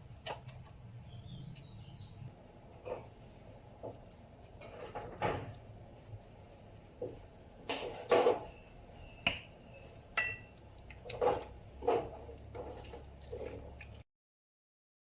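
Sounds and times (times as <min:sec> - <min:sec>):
utensils clinking against pots and dishes: 0:04.4 - 0:05.6, 0:07.7 - 0:09.4, 0:10.1 - 0:14.0.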